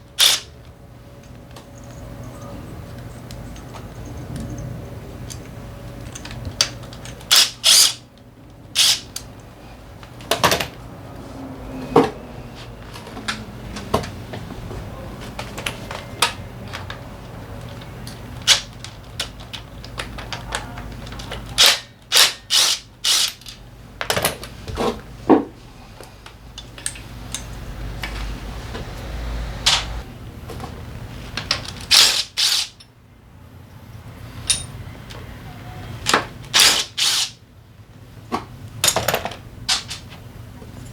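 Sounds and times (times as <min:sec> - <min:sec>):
tools and metal parts clicking: 0:00.2 - 0:00.5, 0:01.5 - 0:08.0, 0:08.7 - 0:09.3, 0:17.6 - 0:24.5, 0:31.4 - 0:33.0, 0:34.4 - 0:34.8, 0:36.0 - 0:37.4
low steady hum: 0:25.1 - 0:31.6.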